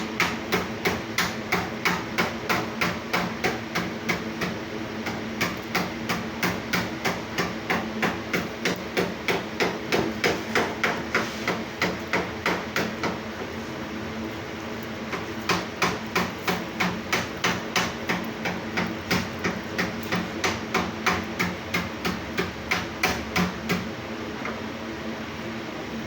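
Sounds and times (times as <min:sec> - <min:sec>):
steady low hum: 0:00.0 - 0:26.0
rapid regular tapping: 0:15.1 - 0:23.9.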